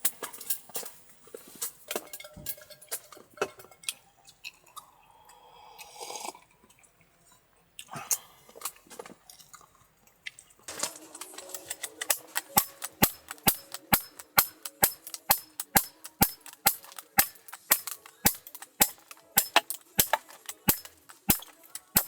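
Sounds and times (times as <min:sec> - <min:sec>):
rhythmic sharp clicks: 0:11.1 - 0:22.0.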